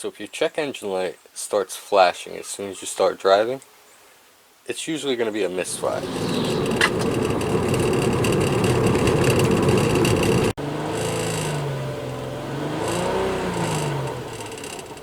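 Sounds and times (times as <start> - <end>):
misfiring car engine revving: 5.6 - 15.0.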